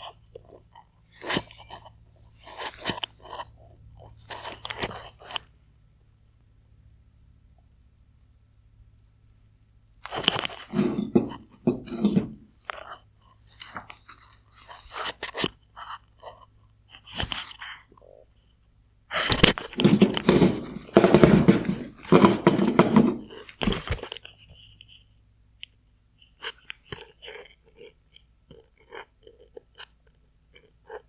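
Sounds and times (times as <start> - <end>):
plastic parts crunching and scraping: 10.1 - 16.0, 19.2 - 24.7.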